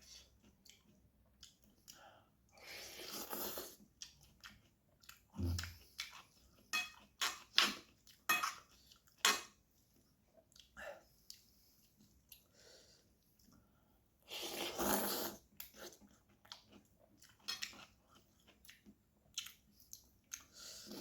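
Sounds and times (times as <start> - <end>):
person chewing: 0.0 - 12.5, 14.4 - 21.0
slurping noodles: 2.6 - 3.8, 14.3 - 16.0
utensils clinking against bowl: 6.8 - 7.4, 8.3 - 8.6.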